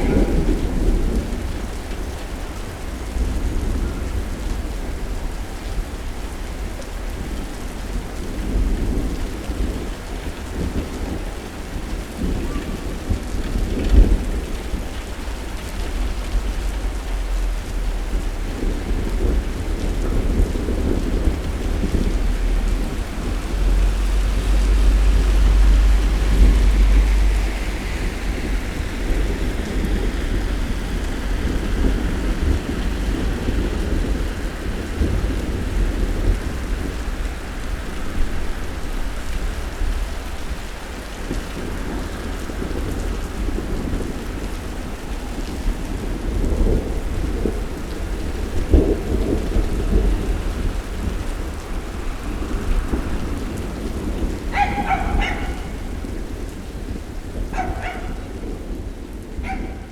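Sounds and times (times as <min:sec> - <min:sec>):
rolling thunder: 0:00.0 - 0:59.9
steady rain falling: 0:00.0 - 0:59.9
dog barking: 0:54.5 - 0:56.0, 0:57.5 - 0:58.4, 0:59.4 - 0:59.9.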